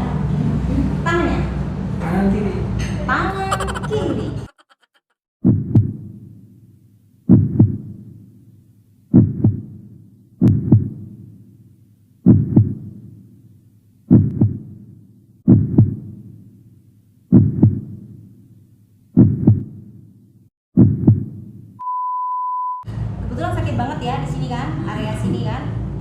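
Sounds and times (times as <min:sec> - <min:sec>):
heartbeat double thump: 0:05.4 - 0:06.0, 0:07.3 - 0:07.9, 0:09.1 - 0:09.7, 0:10.4 - 0:11.0, 0:12.3 - 0:12.9, 0:14.1 - 0:14.7, 0:15.5 - 0:16.1, 0:17.3 - 0:18.0, 0:19.2 - 0:19.8, 0:20.8 - 0:21.4.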